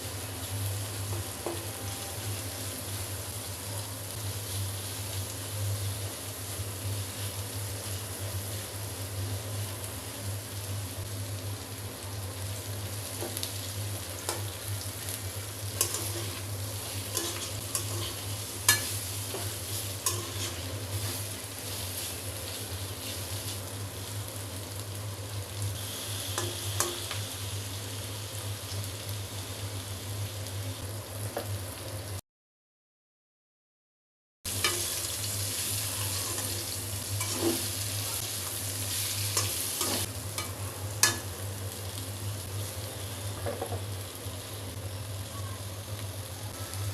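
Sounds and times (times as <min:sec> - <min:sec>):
vegetables sizzling in oil: 0:00.0 - 0:32.2, 0:34.5 - 0:46.9.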